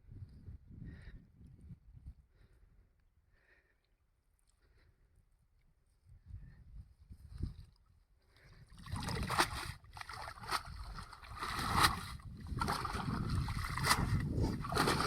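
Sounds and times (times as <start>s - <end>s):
water sloshing: 8.7s - 15.0s
sharp water splashes: 8.8s - 15.0s.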